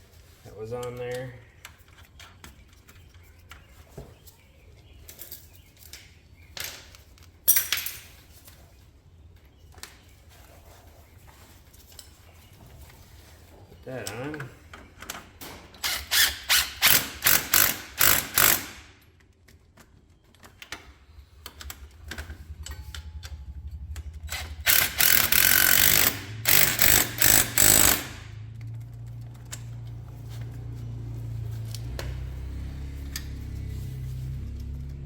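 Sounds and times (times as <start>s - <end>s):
ratchet clicking: 15.8s - 18.9s, 23.9s - 28.3s.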